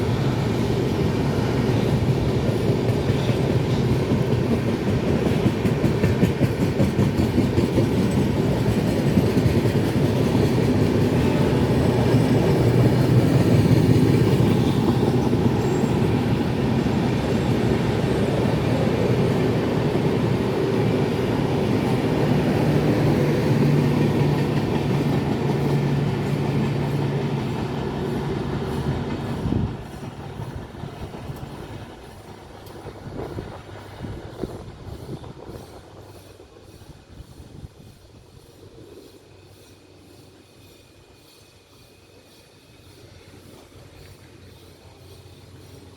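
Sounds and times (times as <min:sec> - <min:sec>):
train wheels clattering over rail joints: 0:00.6 - 0:45.9.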